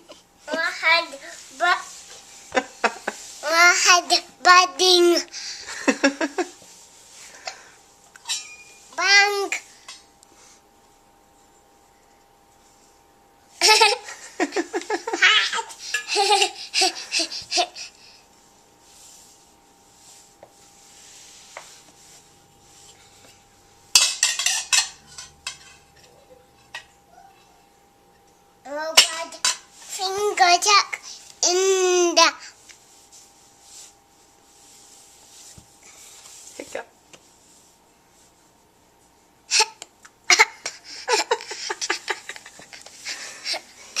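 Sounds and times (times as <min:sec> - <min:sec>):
child giggling: 0:05.7 - 0:06.5, 0:13.6 - 0:17.8, 0:40.3 - 0:43.6.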